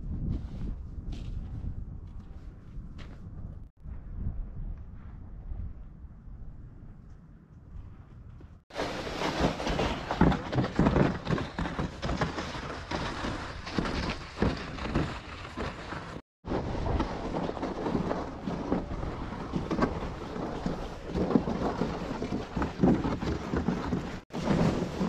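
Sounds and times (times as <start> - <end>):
strong wind buffeting microphone: 0.0 - 8.7.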